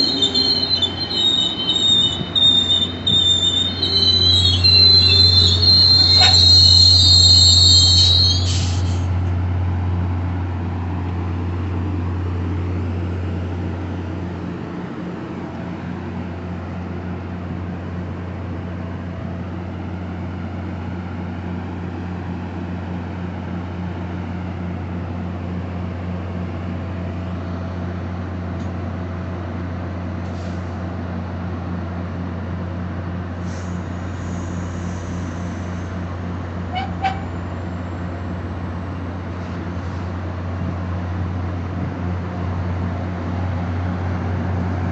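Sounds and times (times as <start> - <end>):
train brake squeal: 0.0 - 9.2, 33.4 - 36.1, 36.7 - 38.1
diesel locomotive humming: 0.0 - 44.9.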